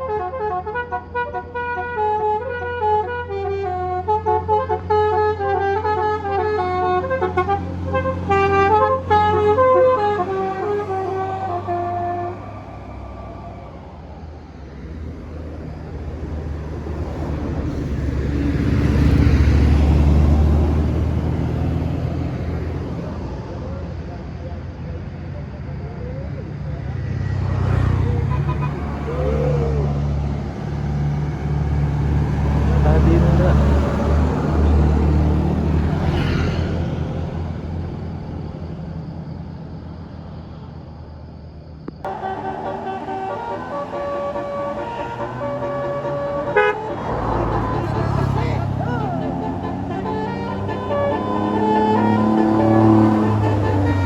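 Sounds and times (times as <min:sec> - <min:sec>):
bus diesel engine passing: 0:00.0 - 0:54.0.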